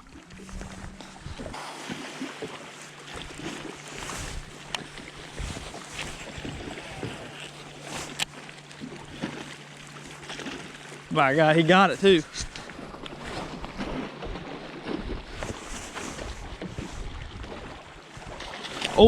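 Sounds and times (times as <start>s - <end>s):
steady low hum: 0.0s - 14.2s
wind and water noise: 0.0s - 19.0s.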